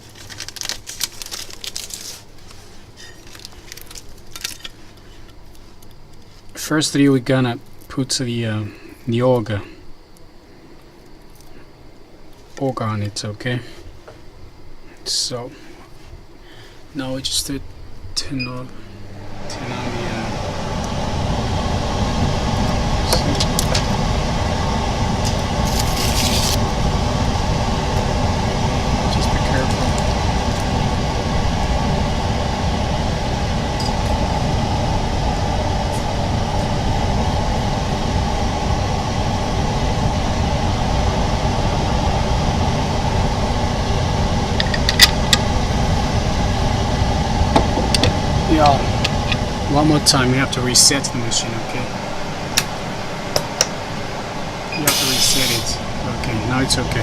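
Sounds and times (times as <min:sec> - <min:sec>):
plastic sheets crinkling: 0:00.0 - 0:06.4, 0:25.7 - 0:26.6
pump motor running: 0:19.0 - 0:39.5, 0:54.7 - 0:57.0
air hiss: 0:54.8 - 0:55.8.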